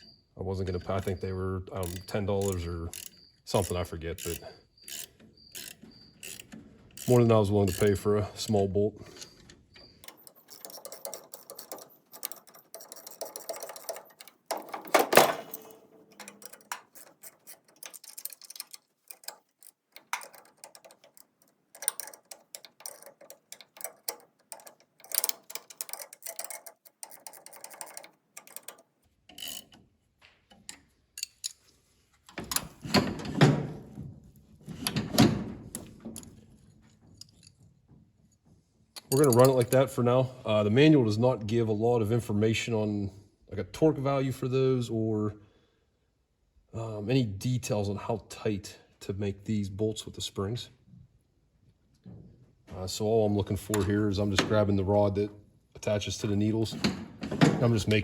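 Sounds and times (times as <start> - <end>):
metallic clicks and ticks: 1.8 - 8.6, 9.9 - 29.8.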